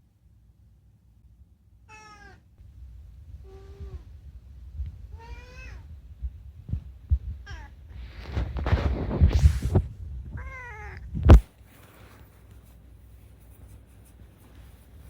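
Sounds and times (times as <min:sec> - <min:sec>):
cat meowing: 0:01.9 - 0:02.4, 0:05.1 - 0:05.9, 0:07.4 - 0:07.8, 0:10.4 - 0:11.0.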